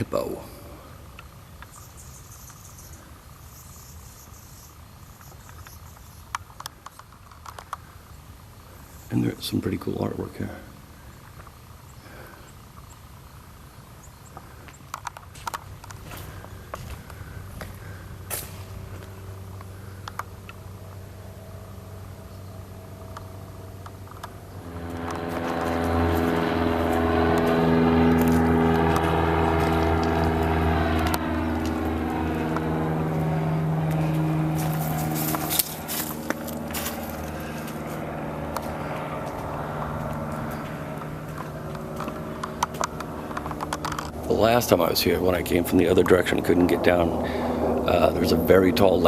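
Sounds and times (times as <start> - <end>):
engine drone: 0.0 - 49.0
insects chirping: 0.8 - 24.8
low rumble: 15.8 - 49.0.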